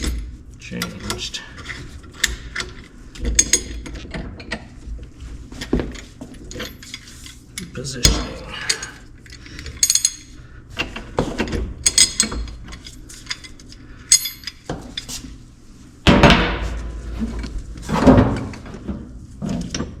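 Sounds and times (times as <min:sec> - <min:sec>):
metal tools clinking: 0:08.6 - 0:10.3, 0:11.8 - 0:15.1.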